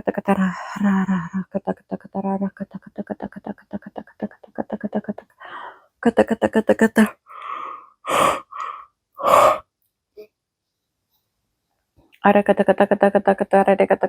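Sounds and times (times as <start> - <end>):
woman chanting repeated syllables: 0.0 - 5.3, 6.0 - 7.2, 12.2 - 14.0
forceful breaths blown out: 7.3 - 9.6.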